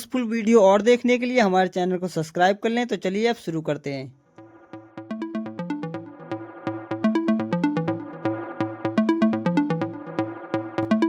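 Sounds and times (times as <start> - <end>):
electronic music with beat: 4.4 - 11.0.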